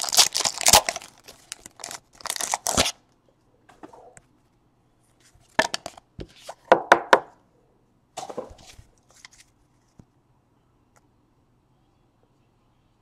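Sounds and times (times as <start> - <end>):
wrapper rustling: 0.0 - 3.0.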